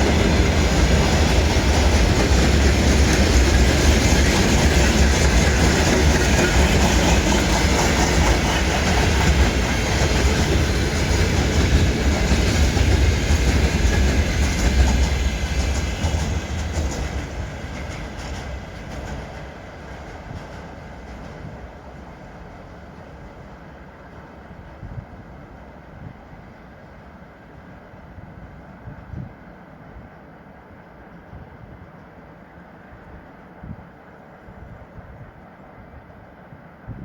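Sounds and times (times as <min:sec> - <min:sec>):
train wheels clattering on rails: 0:00.0 - 0:25.3.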